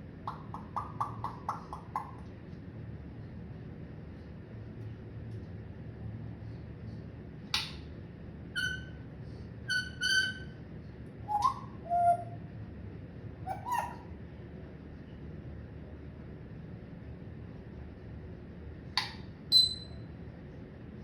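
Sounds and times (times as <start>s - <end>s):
parrot whistles and squawks: 0.3s - 2.2s, 8.6s - 9.0s, 9.7s - 10.6s, 11.3s - 12.4s, 13.4s - 14.1s, 19.0s - 20.0s.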